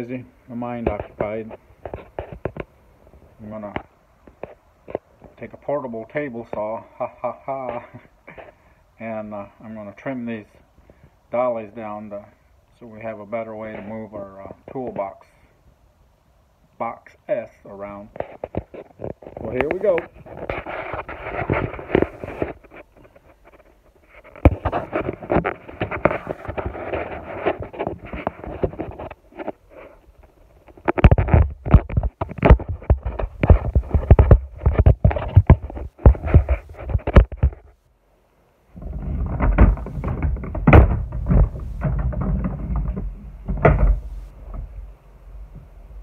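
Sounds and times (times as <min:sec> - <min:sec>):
rustling: 0:00.0 - 0:15.6, 0:17.5 - 0:37.9, 0:38.6 - 0:46.0
workshop gear clunking and clattering: 0:38.8 - 0:44.8.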